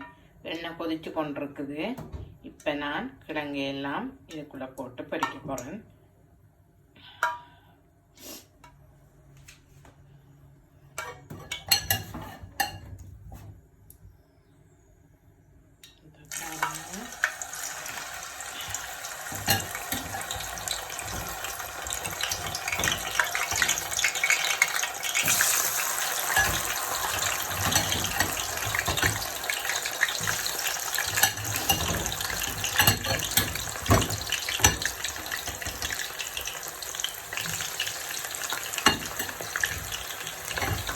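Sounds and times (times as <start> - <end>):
food deep-frying in hot oil: 16.3 - 40.9.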